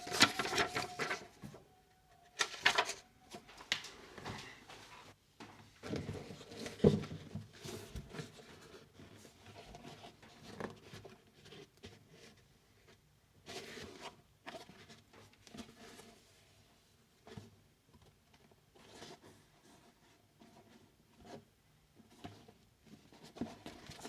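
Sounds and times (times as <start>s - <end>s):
packaging rustling and scraping: 0.0s - 5.1s.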